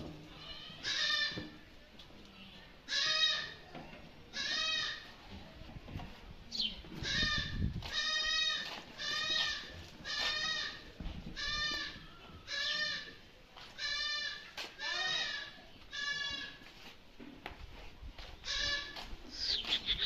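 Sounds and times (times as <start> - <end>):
goat bleating: 0.3 - 1.5, 4.3 - 5.0, 7.0 - 10.8, 11.4 - 16.6, 18.4 - 20.0.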